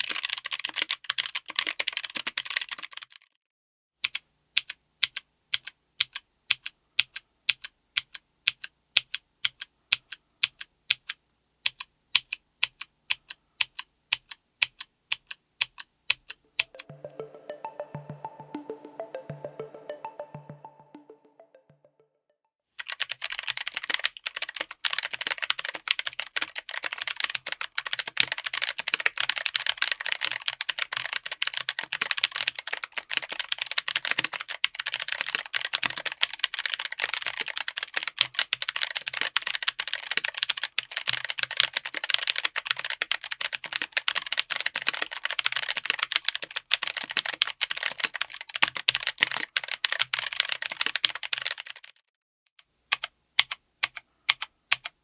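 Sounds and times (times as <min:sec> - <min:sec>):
mechanical keyboard clicky typing: 0:00.0 - 0:03.3, 0:22.8 - 0:52.0, 0:52.9 - 0:55.0.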